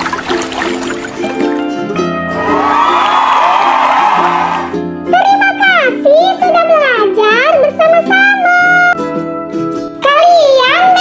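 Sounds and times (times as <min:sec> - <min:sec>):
swooping lead melody: 0:00.0 - 0:05.1.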